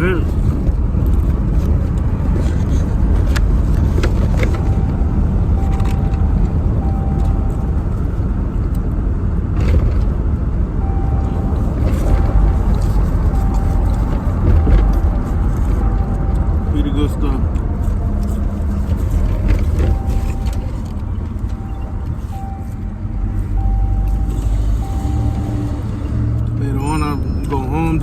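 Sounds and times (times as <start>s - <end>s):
low rumble of street traffic: 0.0s - 28.0s
mid-pitched beep: 4.6s - 7.7s, 10.8s - 17.4s, 19.9s - 20.7s, 21.5s - 28.0s.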